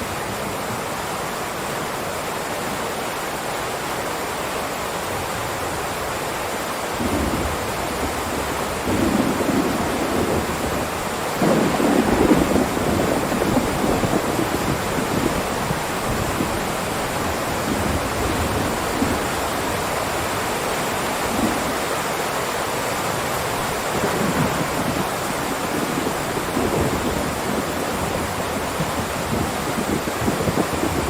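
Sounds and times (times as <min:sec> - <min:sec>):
heavy rain hiss: 0:00.0 - 0:31.0.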